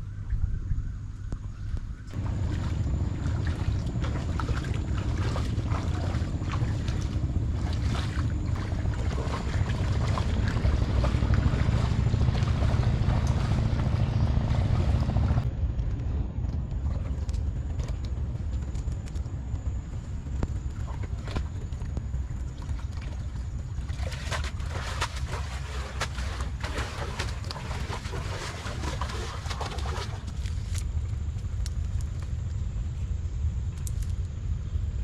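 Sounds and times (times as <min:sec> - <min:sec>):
wind buffeting microphone: 0:00.0 - 0:35.0.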